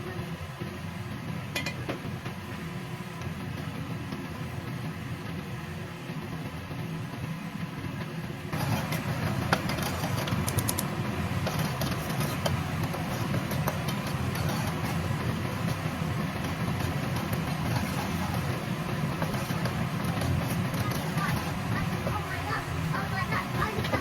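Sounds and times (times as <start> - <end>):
food sizzling in a pan: 8.6 - 24.0.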